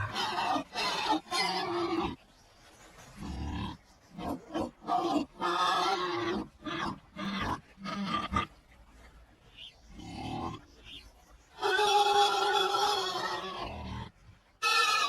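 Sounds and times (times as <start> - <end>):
pigs grunting and squealing: 0.0 - 2.2, 3.2 - 8.6, 9.9 - 10.7, 11.6 - 15.0.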